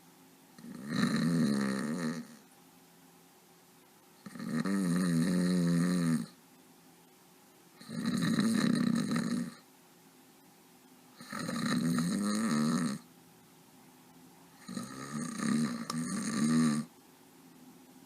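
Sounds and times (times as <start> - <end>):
quiet breaths: 0.0 - 18.0
person snoring: 0.6 - 2.4, 4.2 - 6.4, 7.8 - 9.6, 11.2 - 13.1, 14.6 - 16.9.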